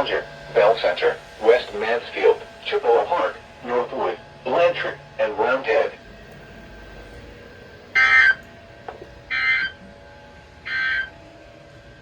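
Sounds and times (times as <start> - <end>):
harsh digital data tones: 8.0 - 8.4, 10.7 - 11.1.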